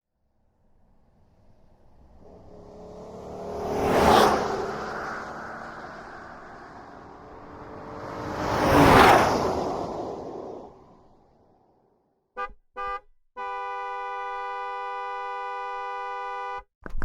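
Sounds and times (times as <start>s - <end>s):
car driving past: 1.0s - 11.6s.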